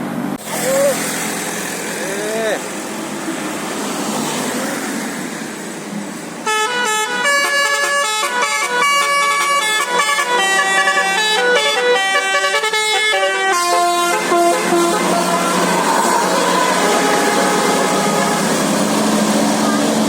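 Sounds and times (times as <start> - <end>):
musical air horn tune: 6.5 - 19.9.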